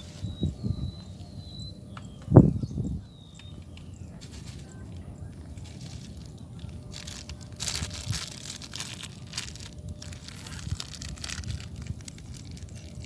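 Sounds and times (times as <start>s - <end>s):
steady low rumble: 0.0s - 13.0s
close crinkling and rustling: 4.2s - 13.0s.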